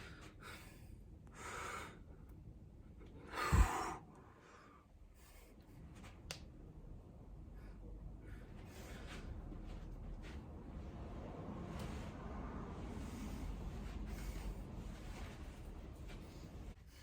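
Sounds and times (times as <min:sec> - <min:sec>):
person breathing noisily: 0:03.2 - 0:05.9, 0:12.9 - 0:15.4.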